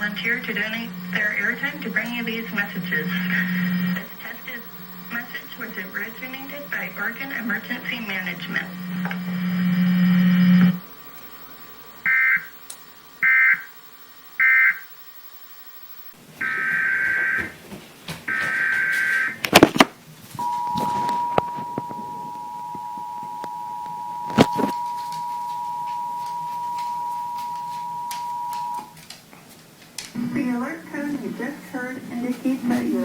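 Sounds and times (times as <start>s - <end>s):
data screech bursts: 0.0s - 10.9s
two-tone attention signal: 0.0s - 10.9s, 16.4s - 17.5s, 20.4s - 28.9s.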